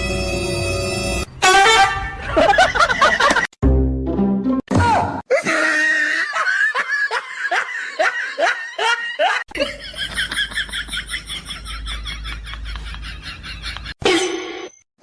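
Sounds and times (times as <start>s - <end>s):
person laughing: 2.1s - 3.5s, 5.3s - 14.0s.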